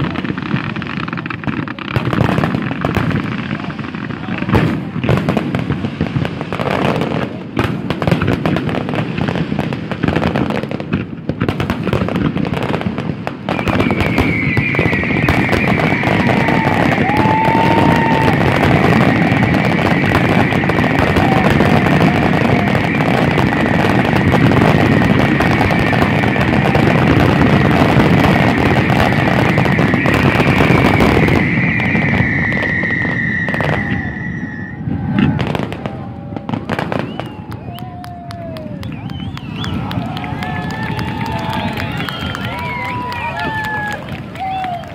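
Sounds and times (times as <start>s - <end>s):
fireworks bangs and crackles: 0.0s - 44.9s
high whistle: 13.6s - 21.5s, 29.0s - 35.1s, 36.8s - 38.0s, 38.7s - 40.0s, 41.3s - 43.5s.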